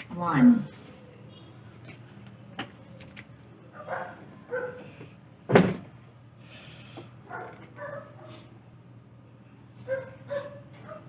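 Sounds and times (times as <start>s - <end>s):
loud thump: 5.5s - 5.9s.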